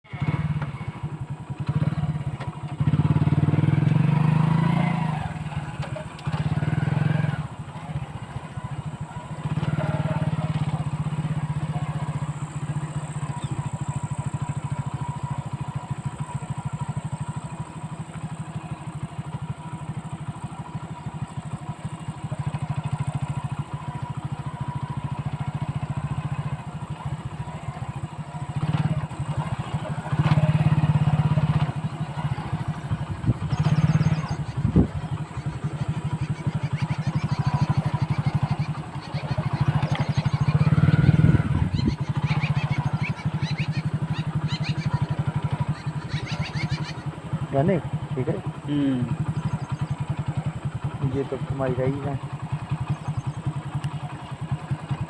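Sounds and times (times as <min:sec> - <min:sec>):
vehicle engine revving: 0:00.0 - 0:55.0.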